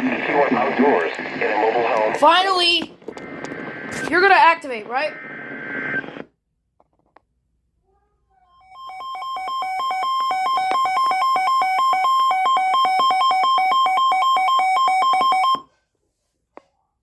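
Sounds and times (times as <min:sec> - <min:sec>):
two-pitch electronic alert alarm: 0:08.6 - 0:15.6.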